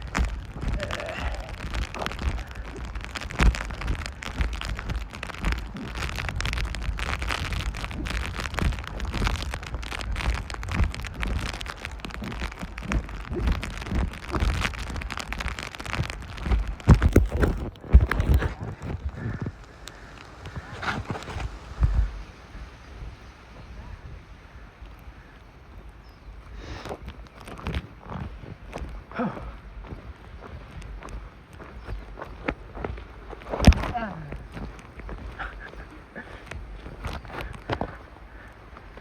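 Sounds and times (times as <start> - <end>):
rain drops hitting close: 0.0 - 39.0.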